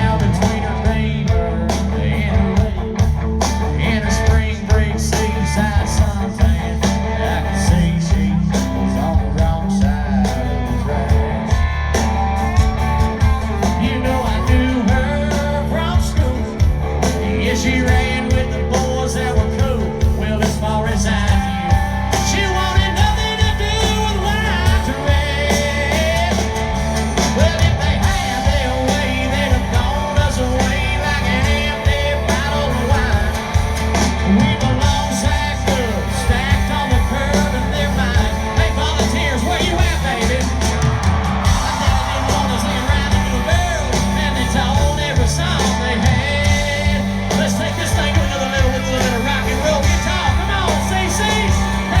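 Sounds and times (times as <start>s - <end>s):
live country-rock band playing: 0.0s - 52.0s
steady drum beat: 0.0s - 52.0s
person singing: 13.1s - 52.0s.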